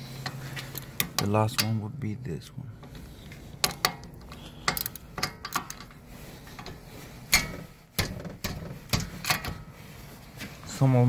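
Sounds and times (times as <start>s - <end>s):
wrench metallic clicks and knocks: 0.2s - 1.9s, 3.6s - 6.0s, 6.6s - 9.6s.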